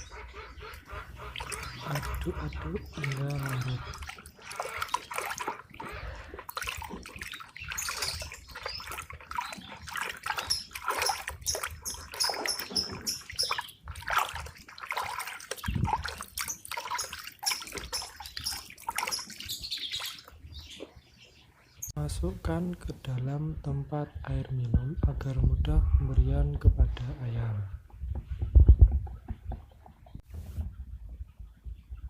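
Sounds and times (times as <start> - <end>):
water stirred and splashing: 0.0 - 21.0.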